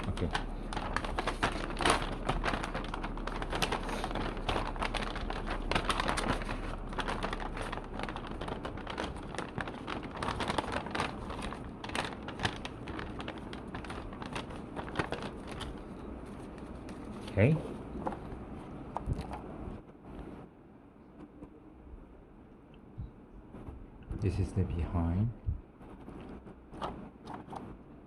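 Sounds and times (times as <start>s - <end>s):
packaging crinkling: 0.0s - 19.6s.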